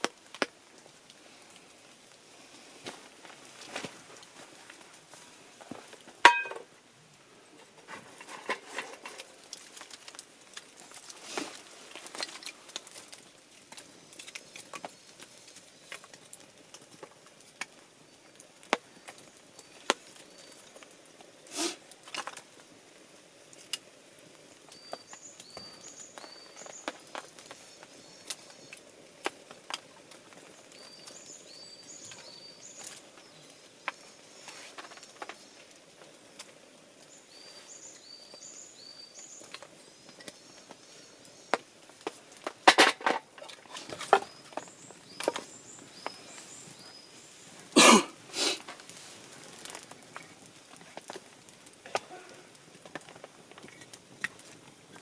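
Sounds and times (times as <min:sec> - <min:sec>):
small bird chirping: 0:24.7 - 0:28.8, 0:30.6 - 0:34.7, 0:44.0 - 0:47.6.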